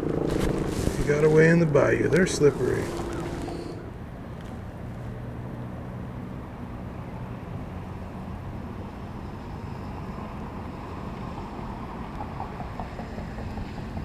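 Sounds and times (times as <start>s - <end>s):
wind rumbling on microphone: 0.0s - 4.8s
distant road traffic: 0.0s - 14.0s.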